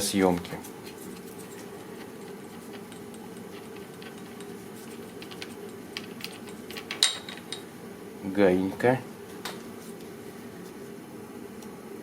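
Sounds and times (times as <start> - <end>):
steady low hum: 0.0 - 12.0
metal parts clicking and tapping: 1.3 - 7.7.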